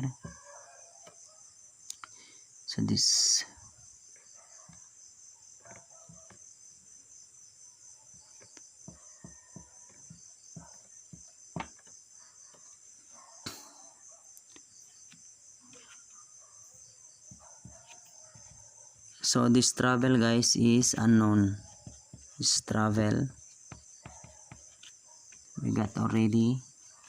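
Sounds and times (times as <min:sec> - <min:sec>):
crickets chirping: 0:00.0 - 0:27.0
faint taps and scrapes: 0:05.6 - 0:06.5, 0:08.3 - 0:12.8, 0:14.4 - 0:16.3, 0:23.3 - 0:25.6.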